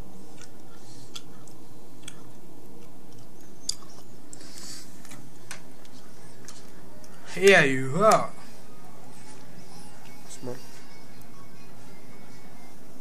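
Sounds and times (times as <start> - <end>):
steady background noise: 0.0 - 13.0.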